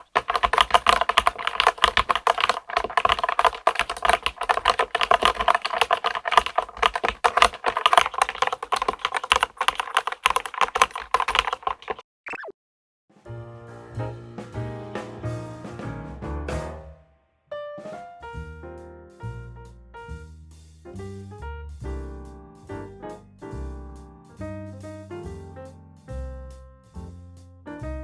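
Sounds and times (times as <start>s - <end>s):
mechanical keyboard typing: 0.0s - 12.0s.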